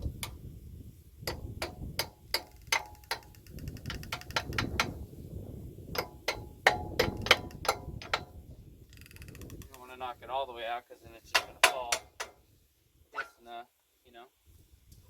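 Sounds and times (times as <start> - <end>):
hammer striking steel: 1.3 - 5.0, 6.0 - 8.4, 11.4 - 12.4.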